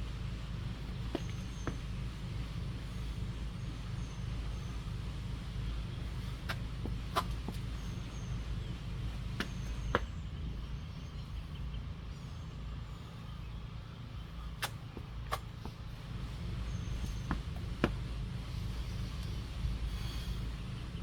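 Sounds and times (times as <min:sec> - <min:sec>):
steady low rumble: 0:00.0 - 0:21.0
hands and feet knocking on ground: 0:01.1 - 0:01.8.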